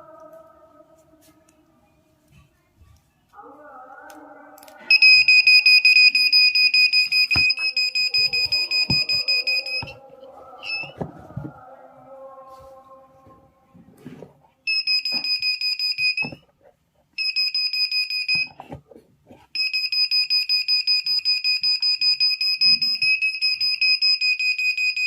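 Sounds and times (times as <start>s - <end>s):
alarm buzzer pulsing beep: 4.9s - 10.0s, 10.6s - 11.0s, 14.7s - 16.4s, 17.2s - 18.6s, 19.6s - 25.0s.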